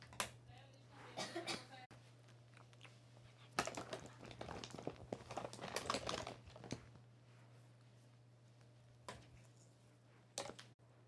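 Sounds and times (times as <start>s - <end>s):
faint low hum: 0.0s - 11.0s
clicks taps and crinkles of packaging: 3.4s - 6.9s.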